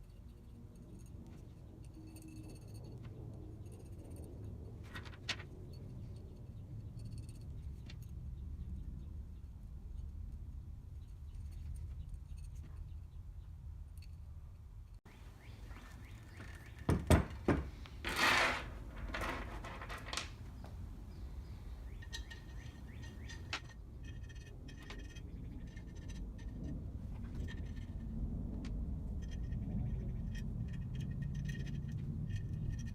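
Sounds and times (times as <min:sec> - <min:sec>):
scrape or rustle: 0:18.0 - 0:20.3
metal tools clinking: 0:21.4 - 0:27.9.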